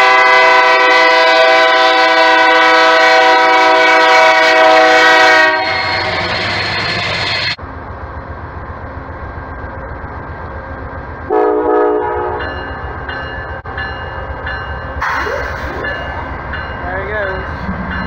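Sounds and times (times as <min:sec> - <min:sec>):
locomotive air horn blast: 0:00.0 - 0:06.2, 0:11.3 - 0:12.4
freight train rumbling: 0:00.0 - 0:18.0.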